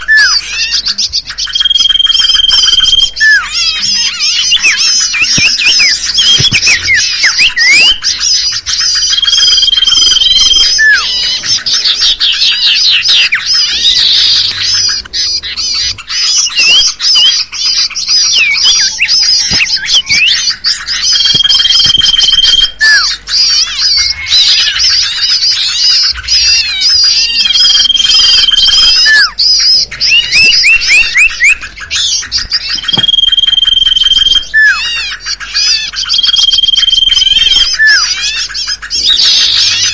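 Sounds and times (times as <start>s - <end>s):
songbirds chirping and trilling: 0.0s - 39.9s
long level whistle: 1.6s - 3.5s, 21.1s - 23.1s, 32.8s - 34.8s, 36.2s - 38.1s.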